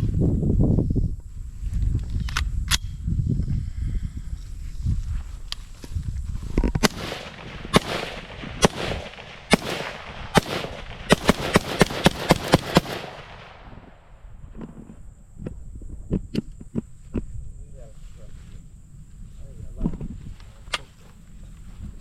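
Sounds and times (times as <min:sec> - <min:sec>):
suppressed rifle shots with echo: 0:06.8 - 0:14.2.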